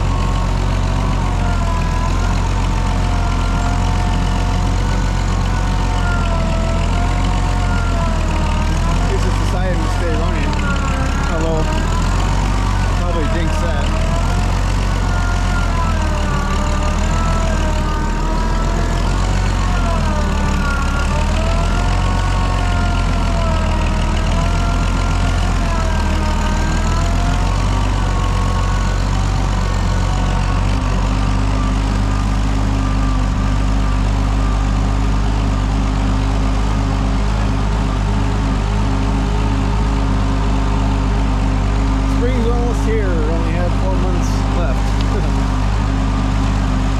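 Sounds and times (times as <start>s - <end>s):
tractor engine running: 0.0s - 46.9s
whining tone: 0.0s - 46.9s.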